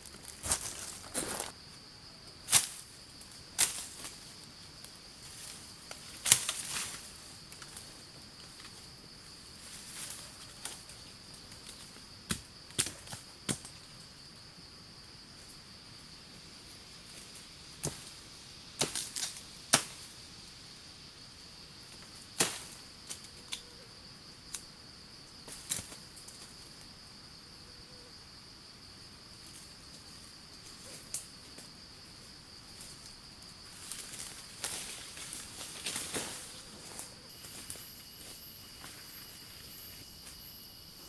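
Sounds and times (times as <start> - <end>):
high-pitched insect drone: 35.9 - 41.0.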